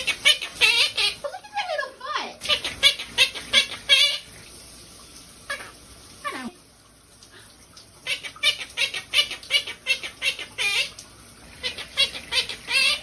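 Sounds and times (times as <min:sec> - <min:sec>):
parrot chirping squawks: 0:00.0 - 0:01.8, 0:02.4 - 0:04.4, 0:05.4 - 0:06.6, 0:08.0 - 0:13.0.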